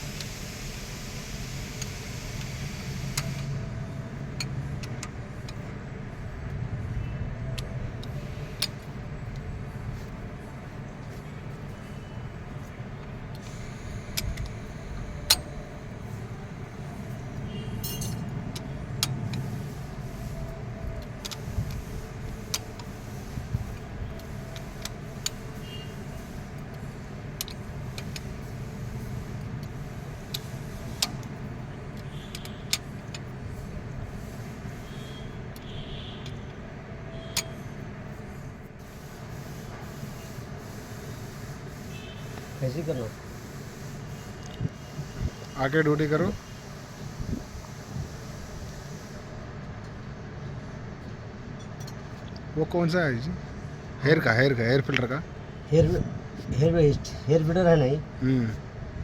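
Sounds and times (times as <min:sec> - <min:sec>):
tools and metal parts clinking: 0:17.8 - 0:19.4.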